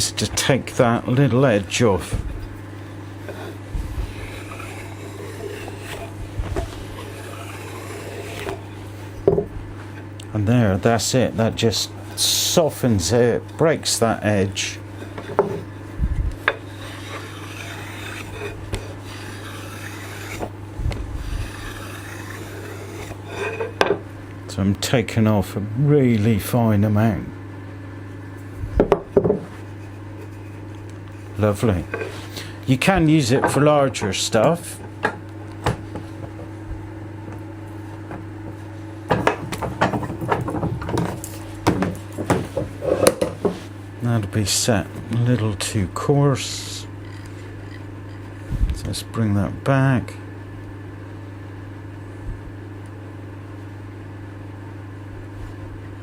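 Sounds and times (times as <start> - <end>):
block plane scraping wood: 2.8 - 10.1, 14.9 - 15.8, 16.4 - 23.9, 31.4 - 32.4, 39.8 - 43.7.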